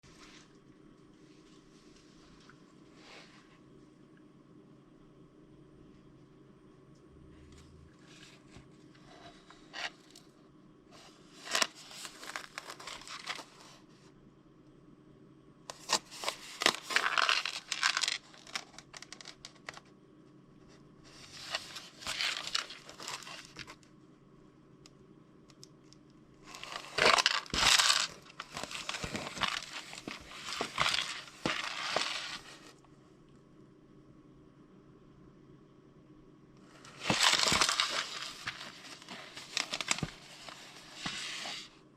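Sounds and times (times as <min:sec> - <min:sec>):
plastic packaging tearing and crinkling: 0:11.4 - 0:13.6, 0:15.7 - 0:19.8, 0:21.3 - 0:23.8, 0:26.5 - 0:32.7, 0:36.9 - 0:41.6.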